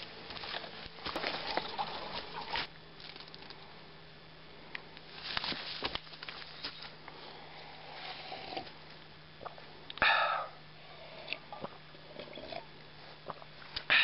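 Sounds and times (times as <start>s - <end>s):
rustling and handling noises: 0.0s - 3.6s, 5.0s - 7.4s.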